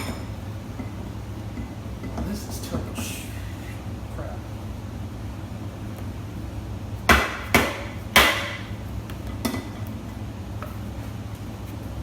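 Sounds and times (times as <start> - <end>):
hammer striking metal: 7.1 - 8.7.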